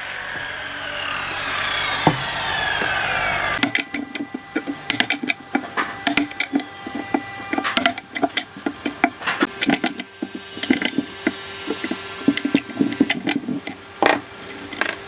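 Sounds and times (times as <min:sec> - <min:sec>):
wood tapping on wood: 0:03.6 - 0:15.0.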